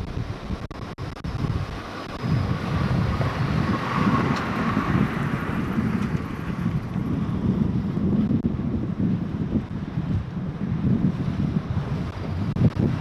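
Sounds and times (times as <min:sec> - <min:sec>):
vehicle fording river: 0:00.0 - 0:13.0
wind buffeting microphone: 0:00.0 - 0:13.0
water rushing: 0:02.3 - 0:07.5.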